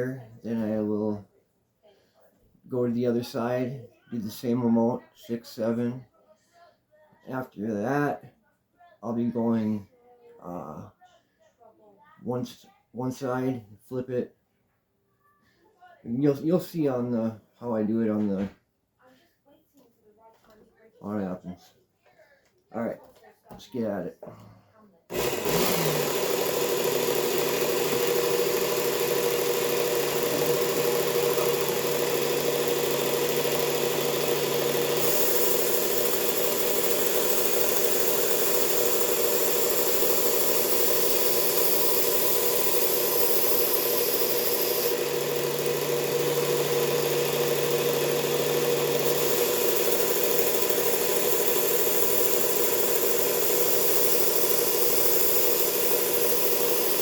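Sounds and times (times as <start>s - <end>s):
belt sharpener grinding knife blade: 25.1s - 57.0s.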